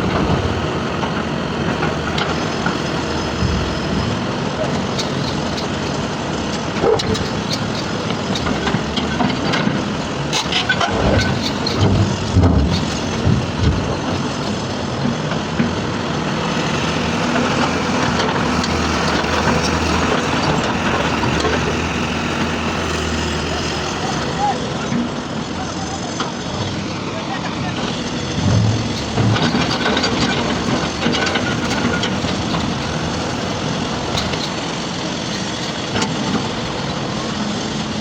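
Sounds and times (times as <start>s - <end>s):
diesel construction machinery running: 0.0s - 38.0s
sharp metal knocks and clanks: 6.8s - 14.8s, 28.3s - 33.2s.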